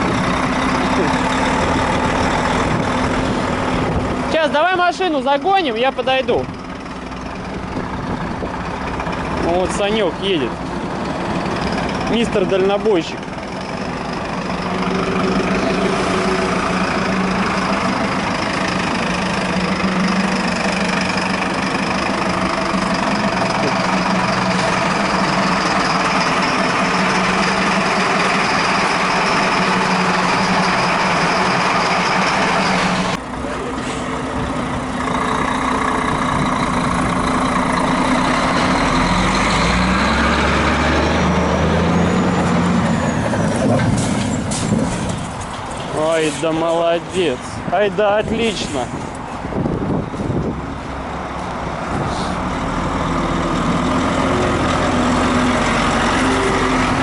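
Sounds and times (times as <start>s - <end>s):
truck engine droning: 0.0s - 57.0s
deeper engine note: 6.4s - 45.0s.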